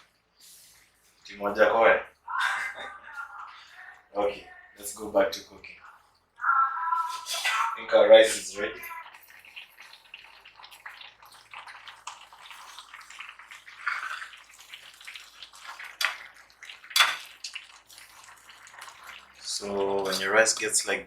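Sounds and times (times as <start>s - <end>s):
rice bubbling and crackling in pot: 8.2s - 21.0s.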